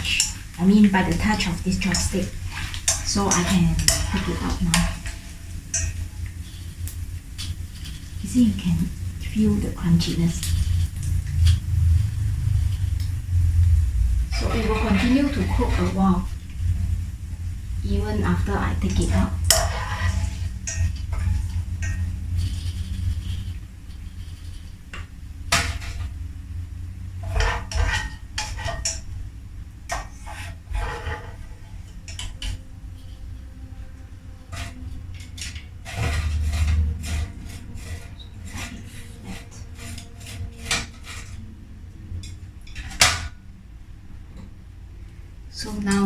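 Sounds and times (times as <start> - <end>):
kitchen utensils clinking on pots: 0.0 - 13.0, 13.7 - 23.6, 27.2 - 29.2, 29.9 - 32.6, 34.4 - 41.4, 42.2 - 43.4
steady low hum: 0.0 - 46.0.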